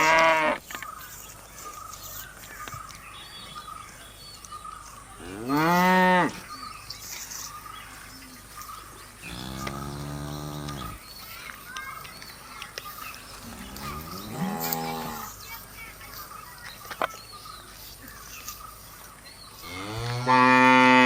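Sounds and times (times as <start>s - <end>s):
cattle mooing: 9.3s - 11.0s.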